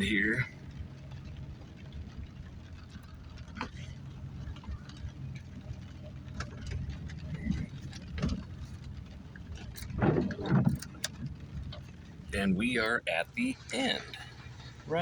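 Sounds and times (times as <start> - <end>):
vehicle engine hum: 0.0 - 15.0
vehicle clunk and creak: 1.1 - 12.2
vehicle body knocks and rattles: 1.2 - 12.1.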